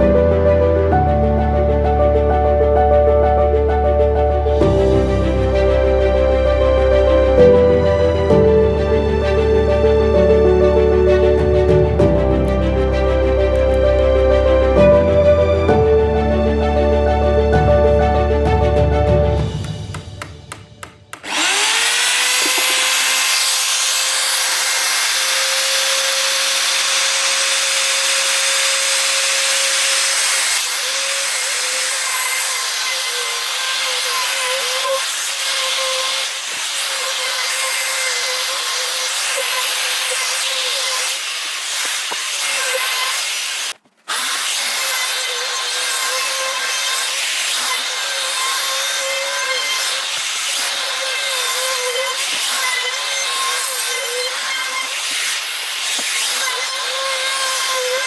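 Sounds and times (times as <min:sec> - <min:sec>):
power tool motor whine: 0:20.8 - 0:58.0.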